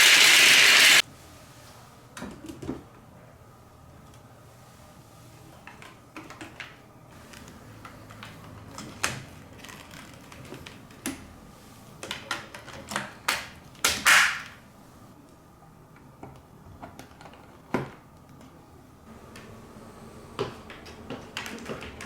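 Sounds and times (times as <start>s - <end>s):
electric water pump hum: 0.0s - 1.0s.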